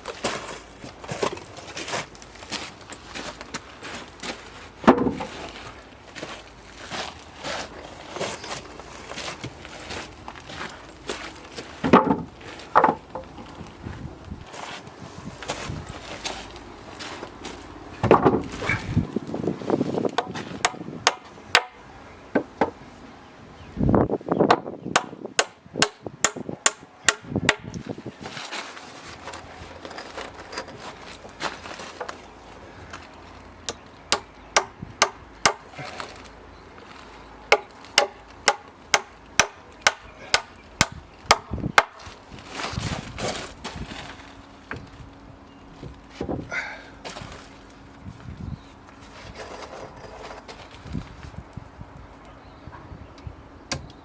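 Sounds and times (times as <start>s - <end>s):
soft shuffling noise: 0.0s - 11.8s, 13.4s - 20.1s, 27.8s - 33.5s, 42.0s - 46.4s, 47.0s - 51.7s
hammer blows on timber: 24.5s - 27.8s.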